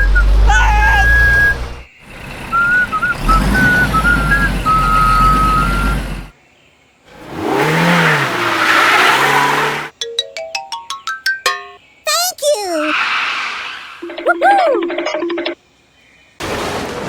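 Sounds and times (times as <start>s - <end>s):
cartoon engine rumble: 0.0s - 6.3s
cartoon vehicle with swinging pitch: 0.0s - 6.3s.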